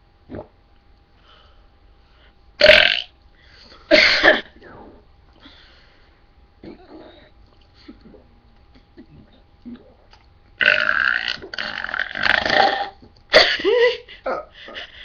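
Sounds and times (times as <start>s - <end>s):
loud burps: 0.3s - 0.5s, 2.6s - 3.1s, 10.6s - 13.0s.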